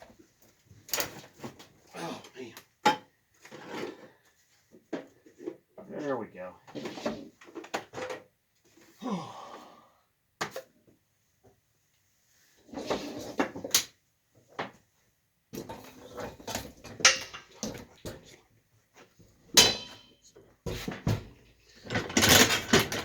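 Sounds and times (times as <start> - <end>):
tools and parts clattering: 15.6 - 18.3, 19.0 - 23.0.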